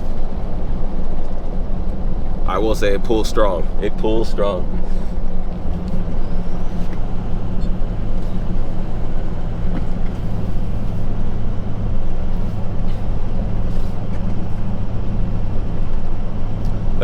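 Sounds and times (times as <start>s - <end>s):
diesel truck engine drone: 0.0s - 17.0s
road noise: 0.0s - 17.0s.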